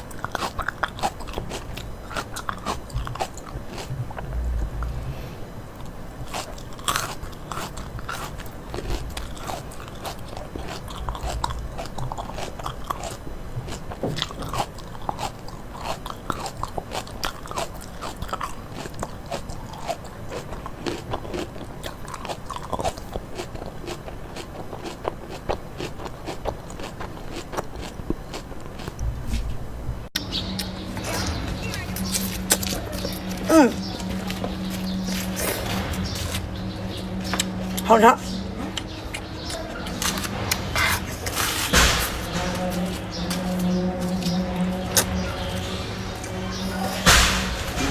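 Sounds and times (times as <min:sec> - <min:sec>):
food crunching while chewed: 0:00.0 - 0:29.6, 0:31.7 - 0:37.9.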